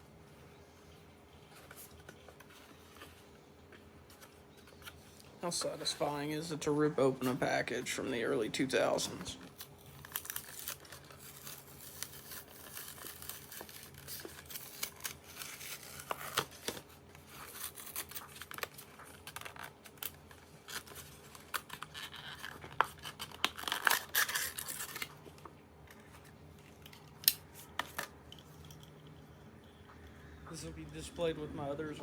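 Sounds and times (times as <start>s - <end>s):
cardboard and plastic tearing: 9.4s - 28.1s.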